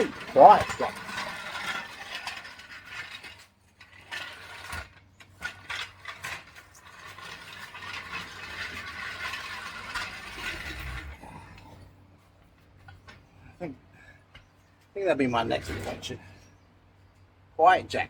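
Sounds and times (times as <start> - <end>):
floor jack rolling and rattling: 0.0 - 11.8.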